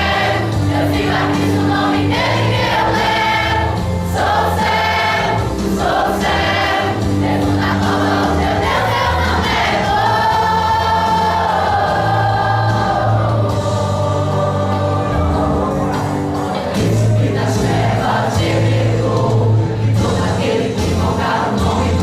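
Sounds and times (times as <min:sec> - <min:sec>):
choir singing gospel: 0:00.0 - 0:22.0
instrumental backing: 0:00.0 - 0:22.0.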